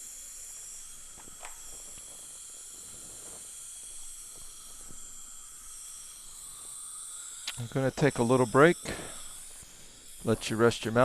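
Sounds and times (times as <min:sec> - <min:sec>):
dental suction hissing: 0:00.0 - 0:11.0.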